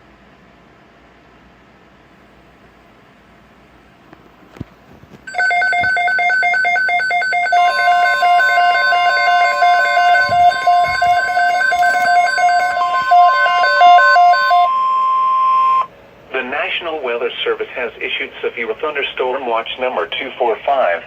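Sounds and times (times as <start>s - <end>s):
steady high alarm tone: 5.3s - 15.9s
rapid warbling two-tone signal: 5.4s - 15.9s.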